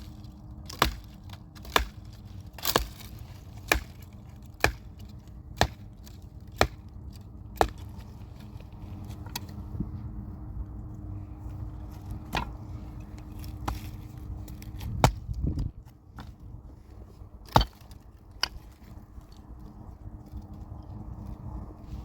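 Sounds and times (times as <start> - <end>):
firewood being chopped: 0.0 - 9.6, 12.0 - 16.6, 17.4 - 19.0
steady low rumble: 0.0 - 22.0.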